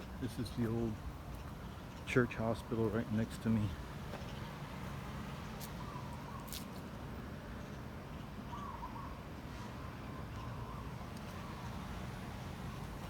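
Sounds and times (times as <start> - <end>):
faint bird calls: 5.7 - 6.6, 8.5 - 11.7.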